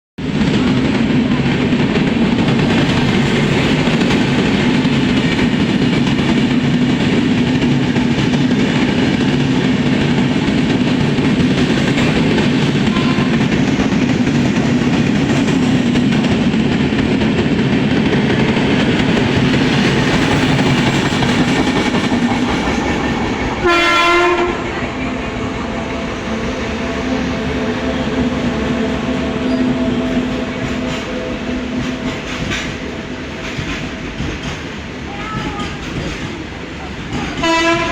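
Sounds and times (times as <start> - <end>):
train wheels rumbling on rails: 0.2 - 37.9
train horn blast: 12.1 - 13.6, 23.6 - 33.1, 37.4 - 37.9.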